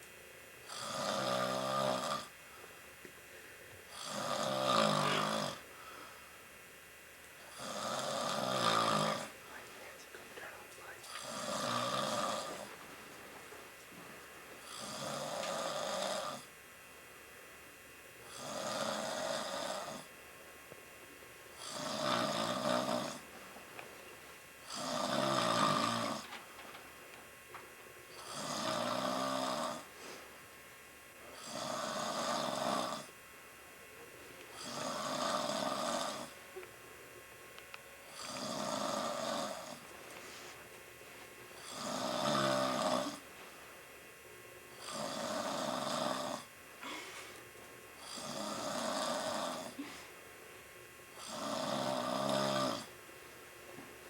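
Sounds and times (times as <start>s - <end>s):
rasping snoring: 0.7s - 2.3s, 3.9s - 5.7s, 7.5s - 9.4s, 11.0s - 12.7s, 14.6s - 16.5s, 18.3s - 20.1s, 21.6s - 23.2s, 24.6s - 26.3s, 28.2s - 29.9s, 31.3s - 33.1s, 34.6s - 36.4s, 38.1s - 39.8s, 41.6s - 43.2s, 44.8s - 47.0s, 48.0s - 49.9s, 51.2s - 52.9s.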